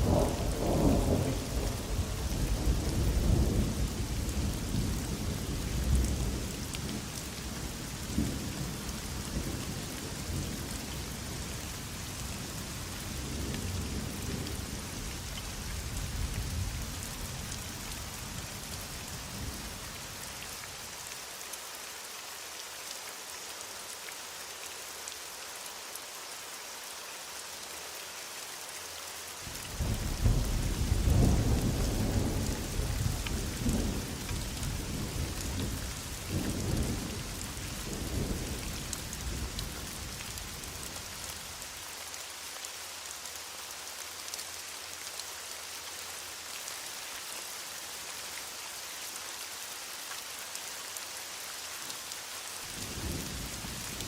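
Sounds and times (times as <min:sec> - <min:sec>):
heavy rain: 0:00.0 - 0:54.0.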